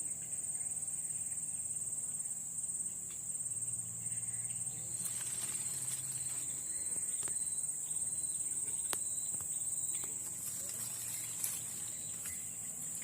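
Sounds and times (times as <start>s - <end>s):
insects trilling: 0.0s - 13.0s.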